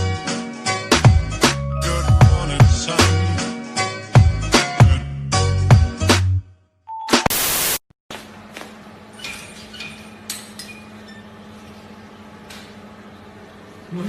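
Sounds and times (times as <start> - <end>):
burst of static: 7.3 - 7.8.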